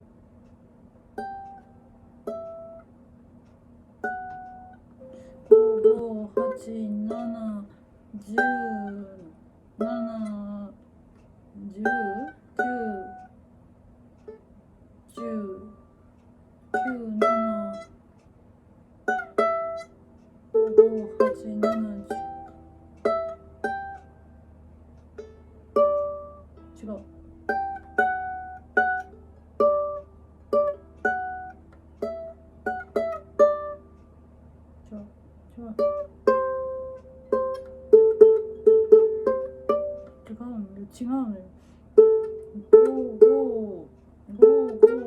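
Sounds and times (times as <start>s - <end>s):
ukulele chord strummed: 1.1s - 2.9s, 4.0s - 7.6s, 8.2s - 10.4s, 11.8s - 13.3s, 16.7s - 17.9s, 19.0s - 34.1s, 35.7s - 40.5s, 42.0s - 45.0s
ukulele notes plucked: 1.1s - 2.9s, 4.0s - 10.6s, 11.7s - 13.3s, 16.7s - 18.0s, 19.0s - 24.4s, 25.0s - 34.1s, 34.9s - 41.1s, 42.0s - 45.0s.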